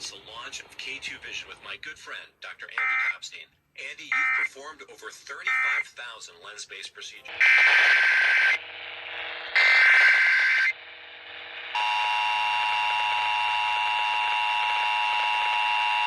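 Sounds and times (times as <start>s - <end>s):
two-tone alert signal: 2.8s - 3.1s, 4.1s - 4.5s
digital data burst: 9.6s - 10.7s.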